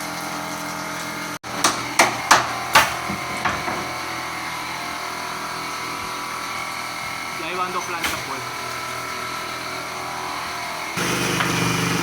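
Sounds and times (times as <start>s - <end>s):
hammer blows on wood: 1.5s - 4.0s.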